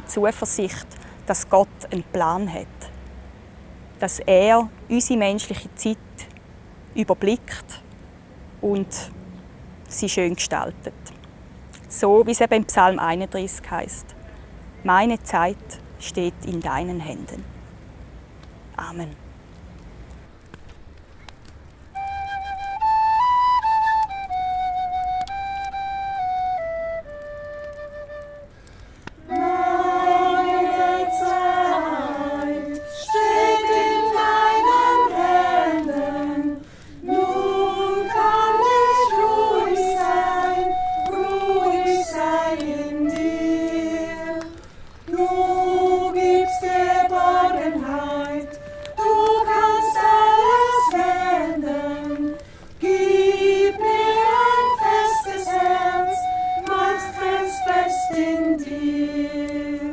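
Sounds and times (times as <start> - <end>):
group of voices singing: 29.2 - 59.9.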